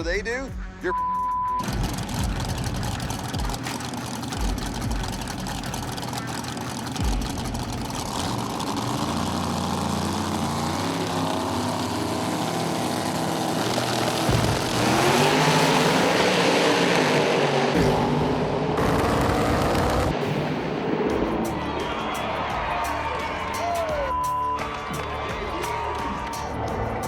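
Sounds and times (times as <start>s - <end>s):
race car engines revving: 1.6s - 23.2s.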